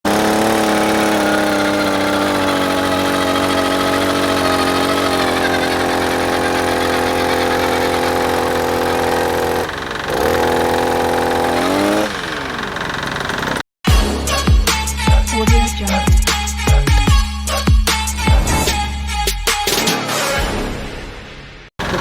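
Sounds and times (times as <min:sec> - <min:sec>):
two-stroke engine at high revs: 0:00.0 - 0:13.7, 0:21.8 - 0:22.0.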